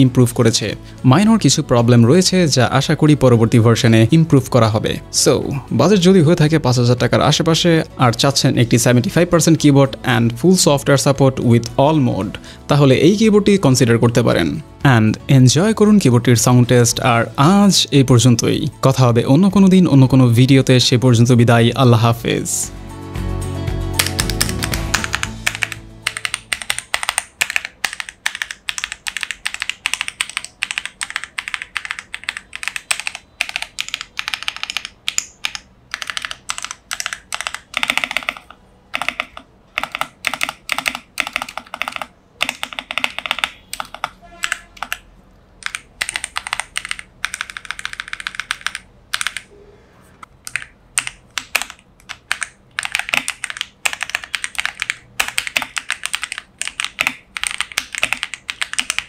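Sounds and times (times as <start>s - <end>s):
mechanical keyboard typing: 24.0s - 45.0s, 45.6s - 49.5s, 50.4s - 59.0s.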